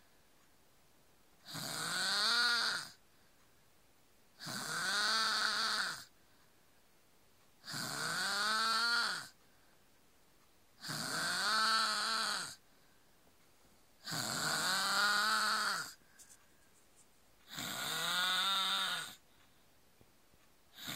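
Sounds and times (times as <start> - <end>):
man snoring: 1.4 - 3.0, 4.4 - 6.1, 7.6 - 9.4, 10.8 - 12.6, 14.0 - 16.0, 17.4 - 19.2.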